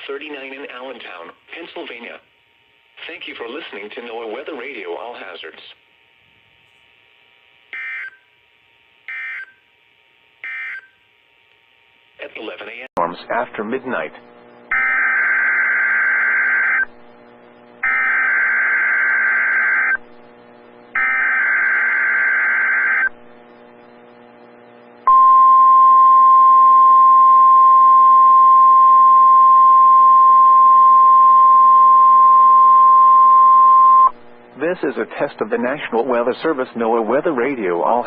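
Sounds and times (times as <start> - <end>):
steady alarm tone: 7.7 - 8.3, 9.1 - 9.6, 10.4 - 11.0, 14.7 - 16.9, 17.8 - 20.0, 20.9 - 23.1.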